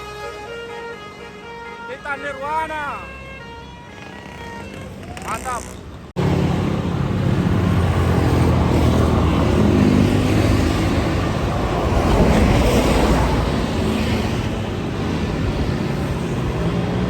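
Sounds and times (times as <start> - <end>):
road noise: 0.0 - 17.0
bus engine rumble: 3.4 - 17.0.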